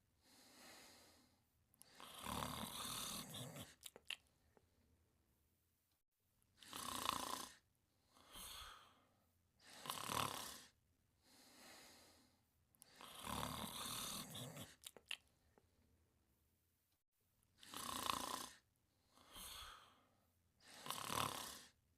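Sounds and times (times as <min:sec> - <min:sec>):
quiet breath: 0:00.0 - 0:04.8, 0:07.4 - 0:15.9, 0:18.5 - 0:21.8
person snoring: 0:01.8 - 0:04.0, 0:06.6 - 0:07.6, 0:08.2 - 0:09.0, 0:09.6 - 0:10.8, 0:12.8 - 0:15.1, 0:17.6 - 0:18.6, 0:19.2 - 0:21.8.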